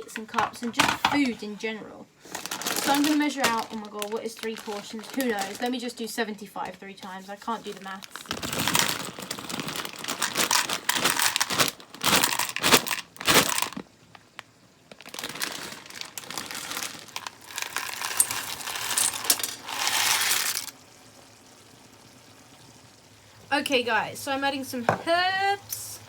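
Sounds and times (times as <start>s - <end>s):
dry pasta rattling onto scales: 2.2s - 6.3s, 7.4s - 20.9s.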